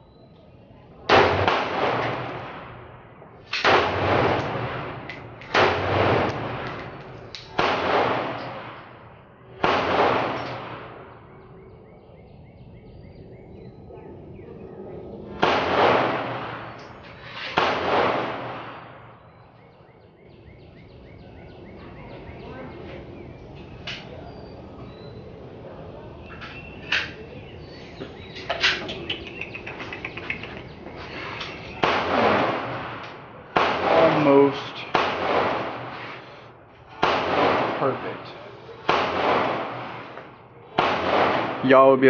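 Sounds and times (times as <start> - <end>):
rifle shots: 1.1 - 11.3, 15.4 - 19.4, 31.6 - 36.3, 36.9 - 42.0.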